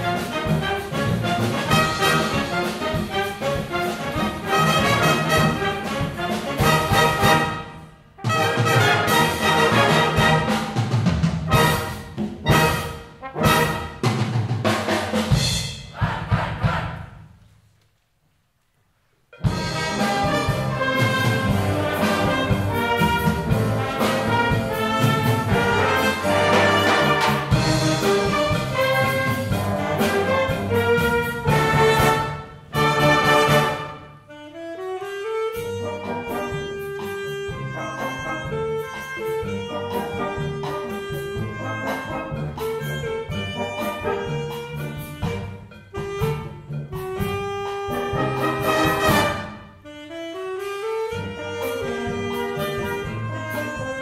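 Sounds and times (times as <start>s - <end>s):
brass band playing jazz: 0.0s - 17.4s, 19.3s - 54.0s.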